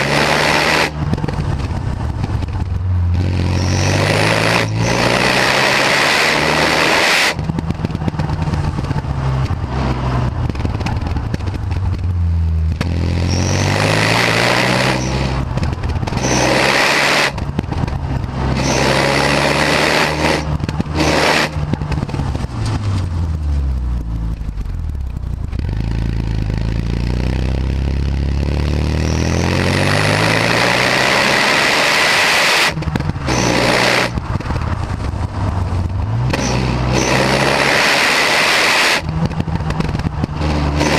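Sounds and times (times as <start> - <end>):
car engine revving: 0.0 - 40.9.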